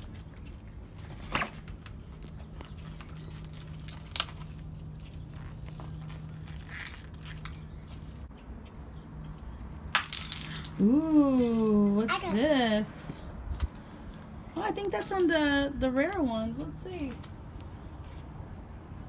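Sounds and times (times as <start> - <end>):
handling plastic toys and packaging: 0.0 - 8.2.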